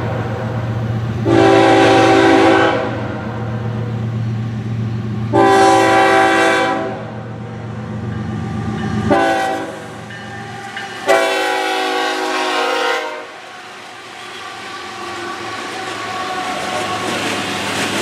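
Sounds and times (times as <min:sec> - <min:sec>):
train rumble and wheel noise: 0:00.0 - 0:18.0
train air horn blasts: 0:01.2 - 0:03.5, 0:05.3 - 0:07.3, 0:09.0 - 0:10.0, 0:11.0 - 0:13.4.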